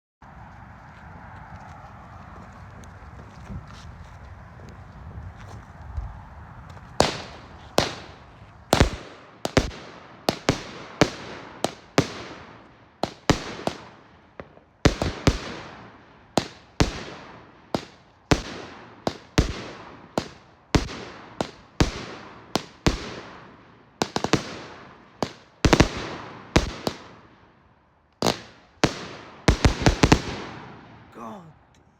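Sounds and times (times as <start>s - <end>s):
firework bangs: 7.0s - 27.2s, 28.2s - 31.0s.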